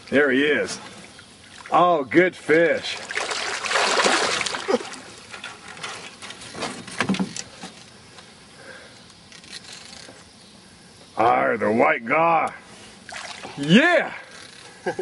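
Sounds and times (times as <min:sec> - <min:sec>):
water splashing and trickling: 0:00.1 - 0:06.3, 0:13.0 - 0:14.0.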